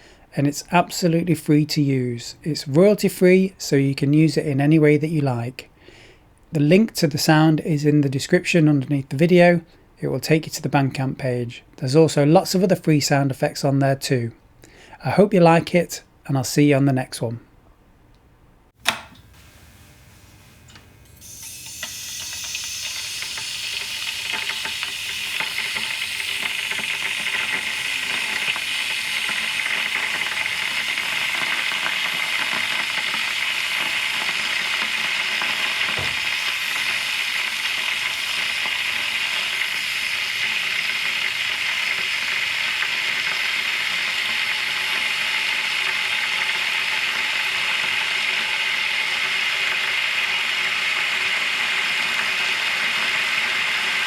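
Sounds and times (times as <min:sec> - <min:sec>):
kettle heating water hiss: 0:18.9 - 0:54.0.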